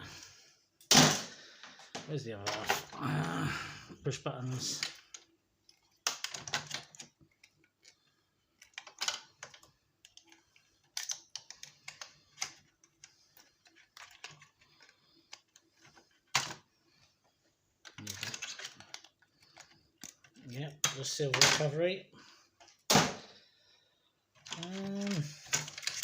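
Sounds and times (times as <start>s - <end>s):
small parts clattering: 4.6s - 21.9s, 24.3s - 26.0s.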